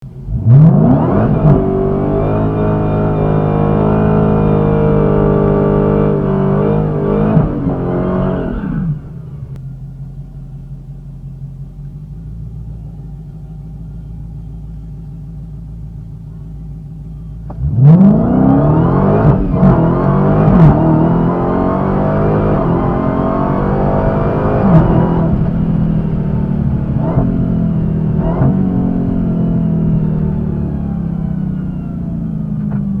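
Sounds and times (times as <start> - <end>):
car engine revving and accelerating: 0.0 - 9.6, 17.4 - 33.0.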